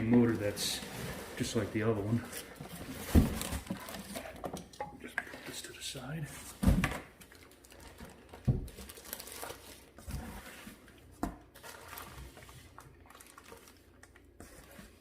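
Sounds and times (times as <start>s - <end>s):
cardboard box rustling: 0.1s - 4.5s.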